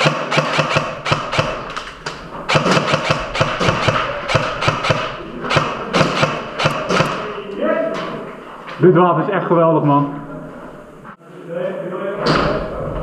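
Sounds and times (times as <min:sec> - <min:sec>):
airsoft gunshots: 0:00.0 - 0:01.9, 0:02.5 - 0:07.3.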